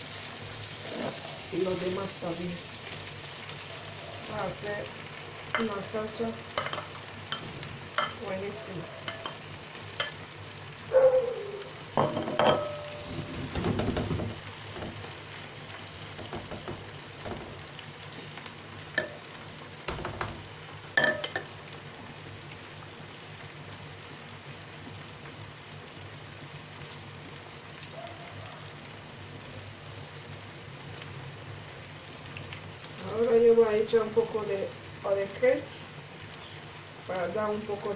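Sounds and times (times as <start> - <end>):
sauce sizzling in a pot: 0.0 - 37.9
spoon stirring and knocking pot: 16.2 - 17.6, 21.0 - 21.5.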